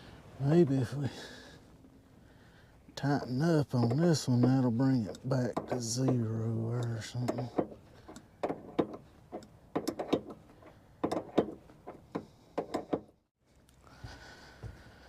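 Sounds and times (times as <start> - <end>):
faint steady hum: 0.0 - 15.0
wrench clicking on bolts: 3.7 - 13.1.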